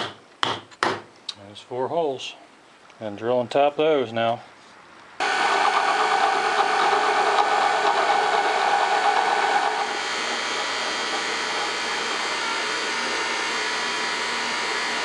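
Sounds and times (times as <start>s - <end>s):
electric drill drilling metal: 5.2s - 15.0s.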